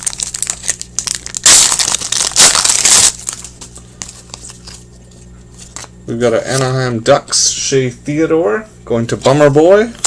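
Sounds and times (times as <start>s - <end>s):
foil wrapper crinkling: 0.0s - 6.0s.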